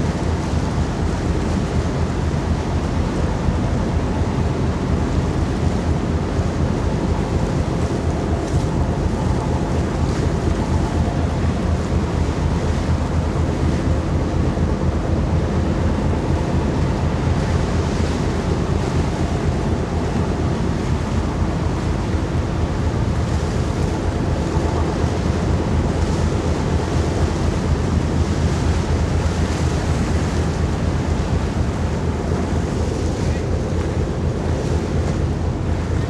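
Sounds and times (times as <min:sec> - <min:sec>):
low engine hum: 0:00.0 - 0:36.0.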